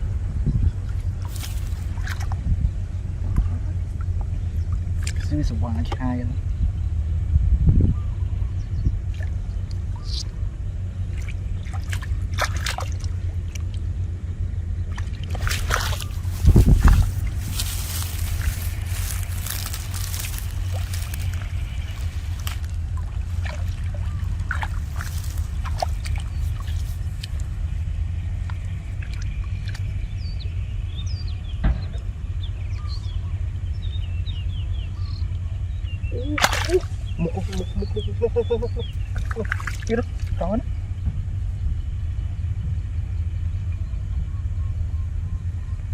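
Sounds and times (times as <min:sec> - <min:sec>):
steady low rumble: 0:00.0 - 0:45.9
small birds chirping: 0:00.5 - 0:02.0, 0:07.8 - 0:12.3, 0:14.5 - 0:45.9
water sloshing and splashing: 0:00.8 - 0:02.5, 0:04.7 - 0:05.4, 0:11.0 - 0:13.9, 0:14.8 - 0:27.7, 0:28.4 - 0:30.0, 0:36.2 - 0:37.8, 0:39.0 - 0:40.5
thump: 0:31.6 - 0:32.0.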